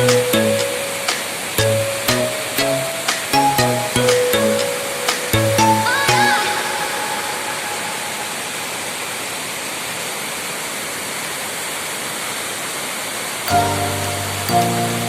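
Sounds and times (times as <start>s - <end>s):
background music: 0.0s - 8.6s, 13.5s - 15.0s
waterfall rushing: 0.1s - 15.0s.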